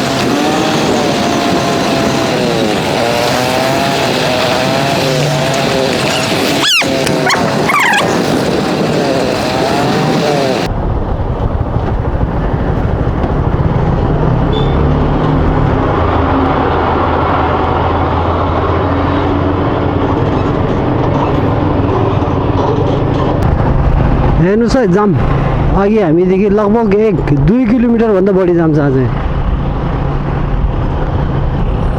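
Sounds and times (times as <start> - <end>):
motorcycle engine running: 0.0 - 24.5
wind and road rumble: 0.0 - 31.9
wavering gliding pitched sound: 6.0 - 8.4.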